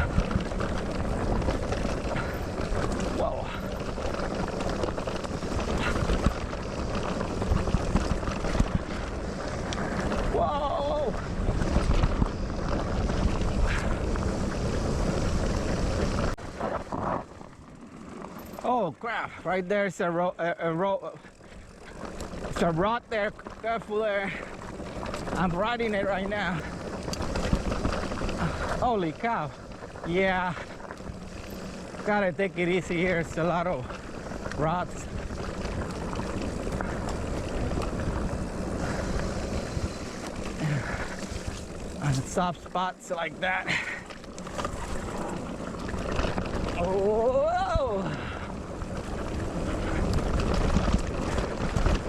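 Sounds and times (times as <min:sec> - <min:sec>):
wind rumble on microphone: 0:00.0 - 0:17.3
bike trail noise: 0:00.0 - 0:52.0
tyre noise on dirt: 0:00.0 - 0:52.0.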